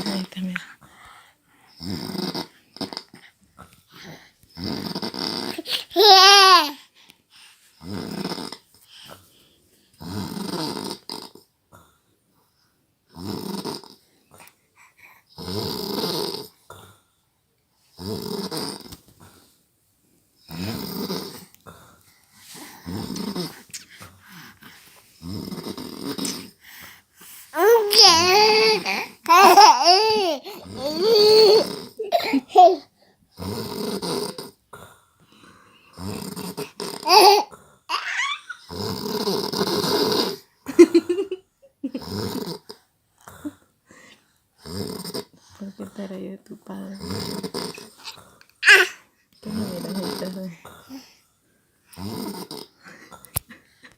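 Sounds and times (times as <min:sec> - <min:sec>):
man snoring: 0:01.8 - 0:03.2, 0:04.0 - 0:05.7, 0:07.8 - 0:08.6, 0:10.0 - 0:11.4, 0:13.1 - 0:14.0, 0:15.4 - 0:16.6, 0:18.0 - 0:18.9, 0:20.5 - 0:21.5, 0:22.6 - 0:23.6, 0:25.2 - 0:26.6, 0:33.4 - 0:34.6, 0:35.9 - 0:37.4, 0:38.6 - 0:40.4, 0:42.0 - 0:42.8, 0:44.6 - 0:45.4, 0:47.0 - 0:48.0, 0:51.9 - 0:53.0
baby giggling and babbling: 0:05.5 - 0:06.8, 0:27.6 - 0:32.8, 0:37.0 - 0:38.6, 0:48.0 - 0:49.0.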